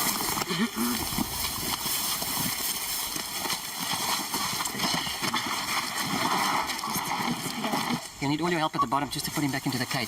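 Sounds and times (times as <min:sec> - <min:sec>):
shuffling footsteps: 0:00.0 - 0:08.2.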